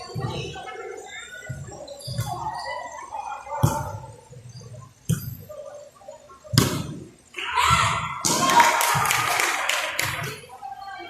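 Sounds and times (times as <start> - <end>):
faint background voices: 0.0 - 11.0
volleyball slaps: 6.5 - 7.0, 7.8 - 10.4.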